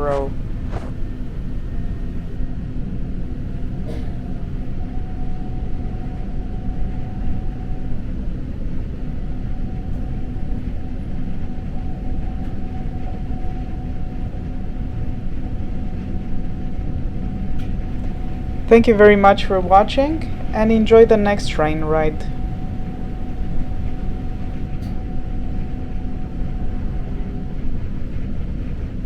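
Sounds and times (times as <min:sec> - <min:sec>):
train wheels rumbling on track: 0:00.0 - 0:02.4, 0:17.5 - 0:29.0
thin steady whine: 0:00.0 - 0:02.6, 0:03.9 - 0:29.0.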